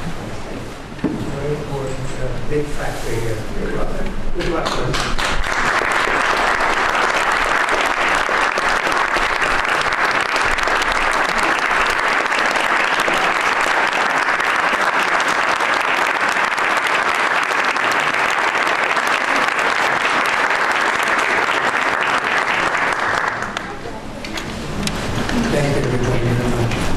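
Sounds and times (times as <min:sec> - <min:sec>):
audience applauding: 0:04.4 - 0:24.0.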